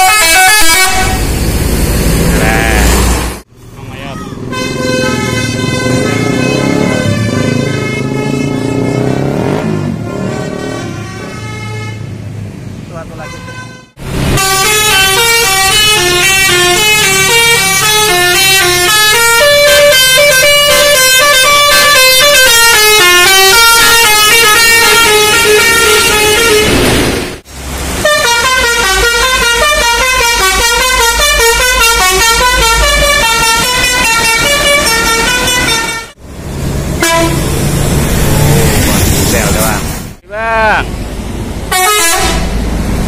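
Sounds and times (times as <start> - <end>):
multi-tone air horn melodies: 0.0 - 1.3, 4.5 - 12.0, 13.2 - 26.8, 28.0 - 36.2, 37.0 - 37.5, 41.7 - 42.5.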